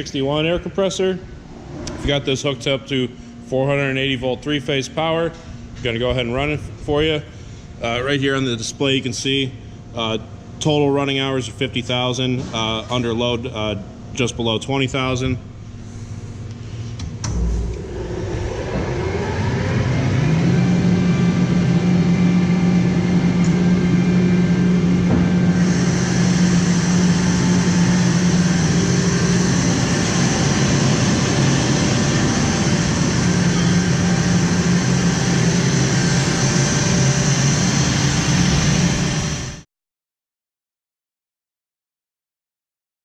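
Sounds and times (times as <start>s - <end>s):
air compressor running: 15.6s - 39.6s
compressor thump: 16.9s - 19.2s, 23.3s - 38.7s.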